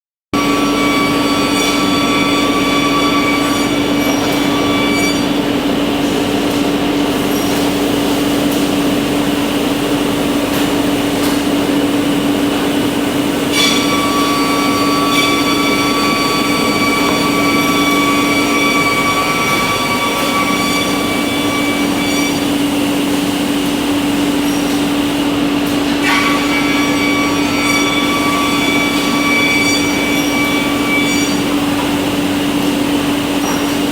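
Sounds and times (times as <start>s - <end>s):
high-pitched spindle whine: 0.4s - 5.8s, 13.4s - 33.9s
machine hum: 0.4s - 33.9s.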